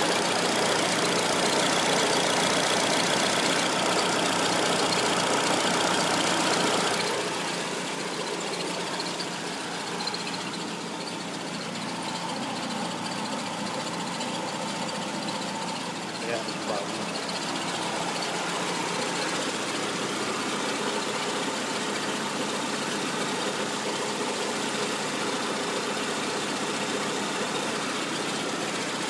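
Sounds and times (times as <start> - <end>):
car engine idling: 0.0 - 29.0.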